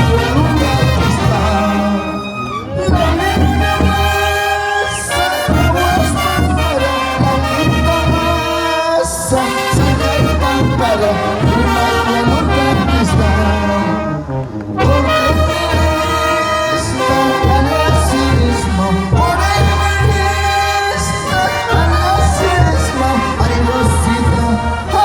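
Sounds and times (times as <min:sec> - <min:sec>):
brass band playing: 0:00.0 - 0:25.0
bass drum beat: 0:02.9 - 0:08.6, 0:17.2 - 0:24.6.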